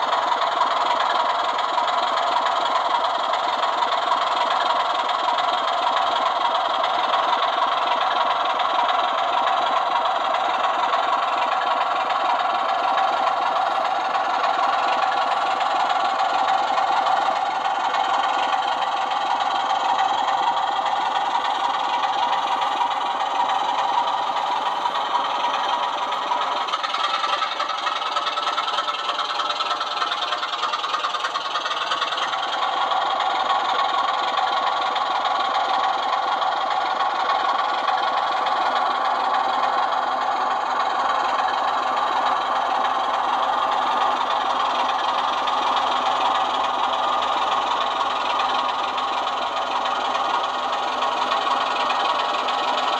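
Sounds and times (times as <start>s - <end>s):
diesel engine through small speaker: 0.0s - 52.9s.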